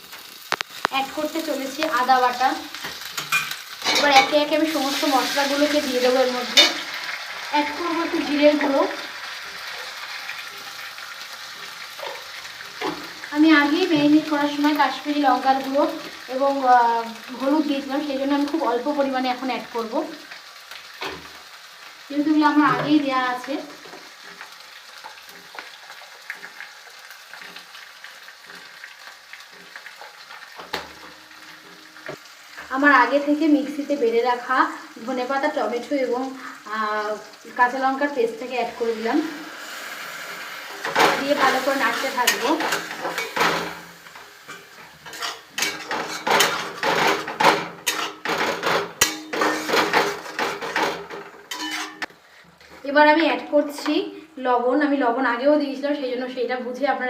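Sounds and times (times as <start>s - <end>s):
masala sizzling in hot oil: 0.0s - 57.0s
utensil scraping and knocking pan: 44.5s - 52.1s.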